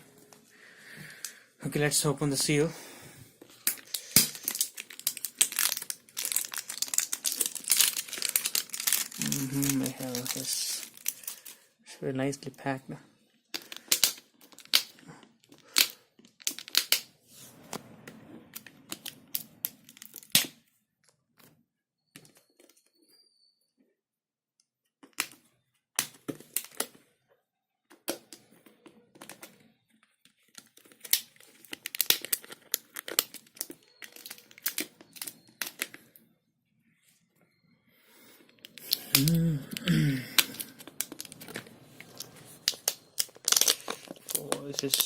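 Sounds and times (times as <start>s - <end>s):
plastic wrapping crinkling: 3.4s - 11.8s, 13.5s - 17.7s, 18.5s - 20.6s, 28.4s - 36.2s, 38.5s - 45.0s.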